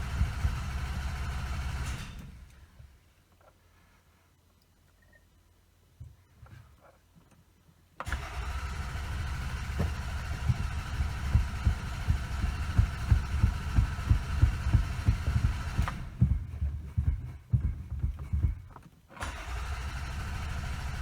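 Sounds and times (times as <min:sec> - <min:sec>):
starter motor cranking engine: 0:00.0 - 0:02.6, 0:08.0 - 0:21.0.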